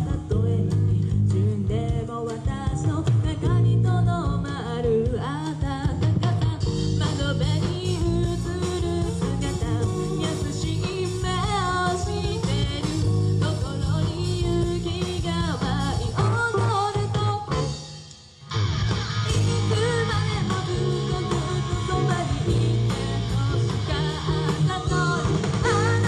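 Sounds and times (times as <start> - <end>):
person singing: 0.0 - 17.8, 19.3 - 26.0
live rock band playing: 6.0 - 26.0.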